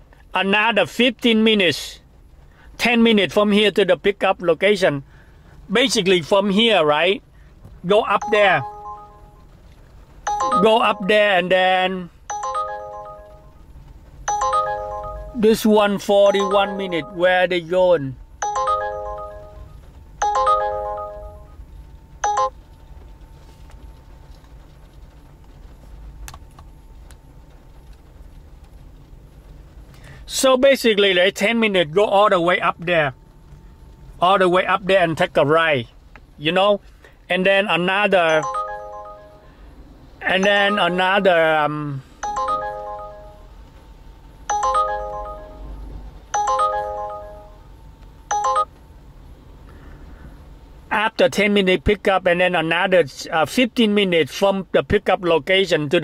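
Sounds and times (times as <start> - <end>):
phone alert chiming: 8.2 - 9.5, 10.3 - 11.6, 12.3 - 13.6, 14.3 - 17.5, 18.4 - 21.6, 22.2 - 22.6, 38.3 - 39.6, 40.2 - 41.3, 42.2 - 43.6, 44.5 - 47.7, 48.3 - 48.7.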